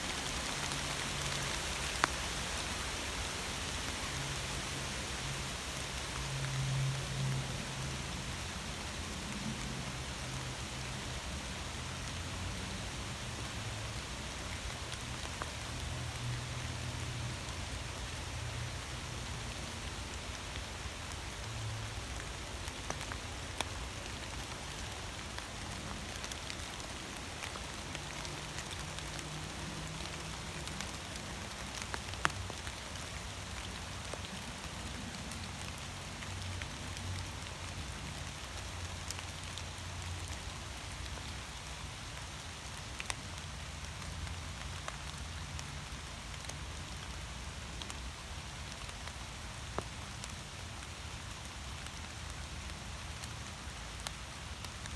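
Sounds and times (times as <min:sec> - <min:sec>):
steady rain hiss: 0:00.0 - 0:54.9
raindrop ticks: 0:20.8 - 0:54.9.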